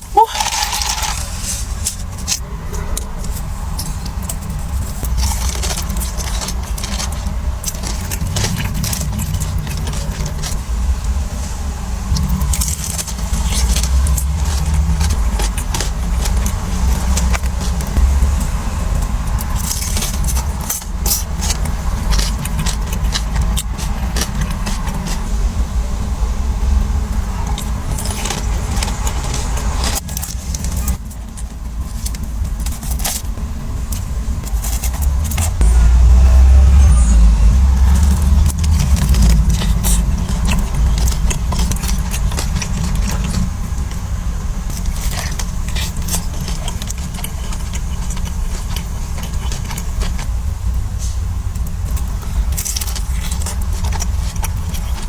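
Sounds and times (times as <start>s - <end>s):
crunching and chewing: 0.0s - 26.0s, 26.6s - 55.0s
low rumble: 8.1s - 20.8s, 34.2s - 44.7s.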